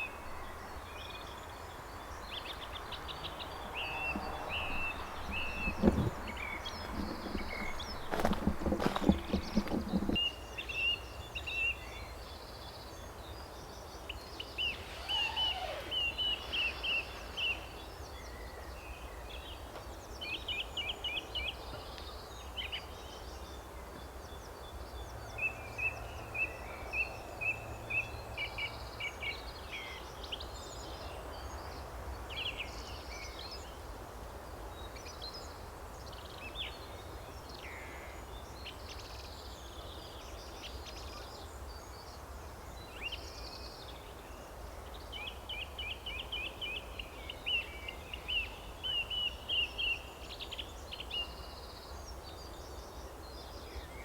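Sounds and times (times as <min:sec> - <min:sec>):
songbirds chirping and trilling: 0:00.0 - 0:10.7.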